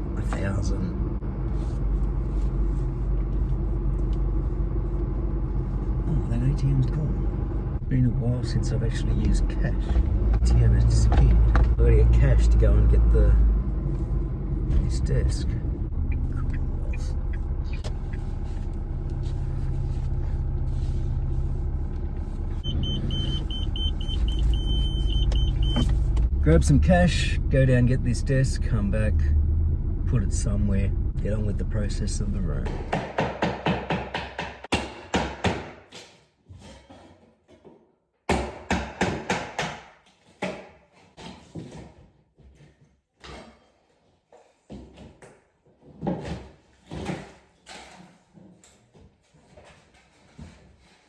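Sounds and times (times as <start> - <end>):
car engine rumble from cabin: 0.0 - 33.0
sharp knocks: 32.6 - 35.8.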